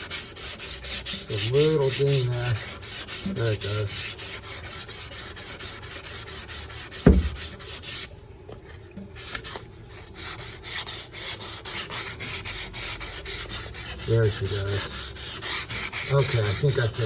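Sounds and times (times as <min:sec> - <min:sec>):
sandpaper rubbing on wood: 0:00.0 - 0:08.1, 0:09.2 - 0:17.0
sharp thump: 0:07.0 - 0:07.5.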